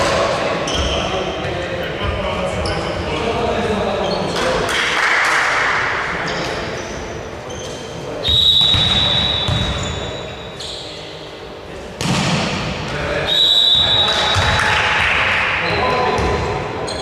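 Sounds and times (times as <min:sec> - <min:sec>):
players in sports hall: 0:00.0 - 0:17.0
referee's whistle blast: 0:08.2 - 0:10.0, 0:13.3 - 0:14.6.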